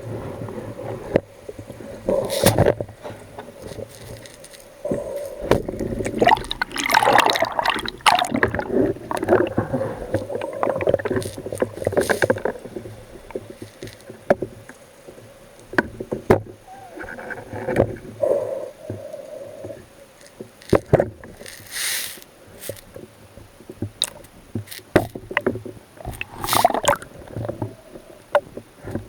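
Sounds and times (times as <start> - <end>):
water sloshing and splashing: 2.5 - 14.2, 23.8 - 28.2
burst of hiss: 21.6 - 22.3.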